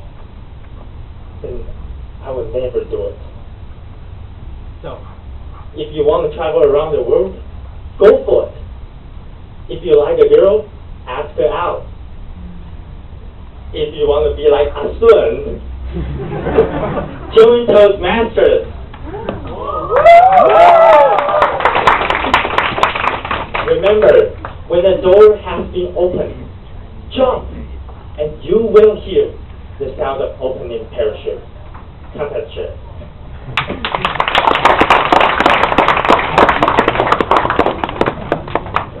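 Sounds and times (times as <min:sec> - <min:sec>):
audience laughing and cheering: 0:15.9 - 0:17.4
audience applauding: 0:19.2 - 0:23.8, 0:33.6 - 0:39.0.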